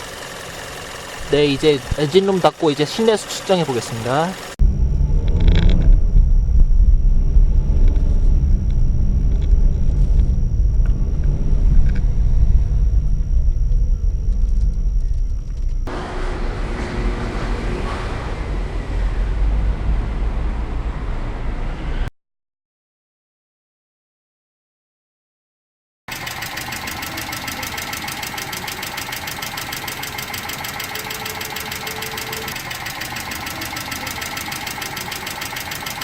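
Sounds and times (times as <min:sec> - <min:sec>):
car engine rumble inside cabin: 0:00.0 - 0:21.4.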